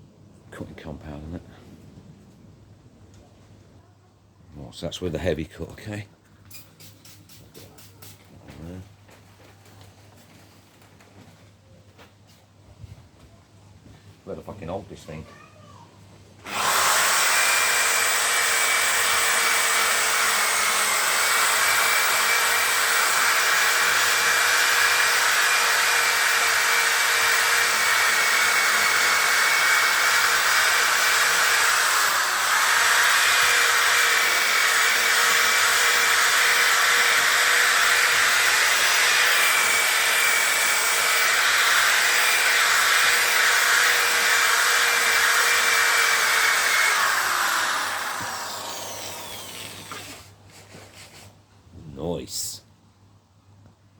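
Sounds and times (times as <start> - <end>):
power tool motor whine: 16.4 - 50.3.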